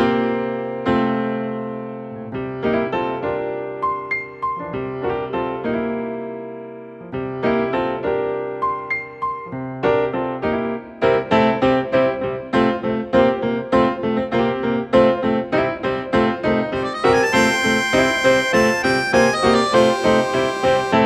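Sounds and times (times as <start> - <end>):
electric piano music: 16.8 - 21.0.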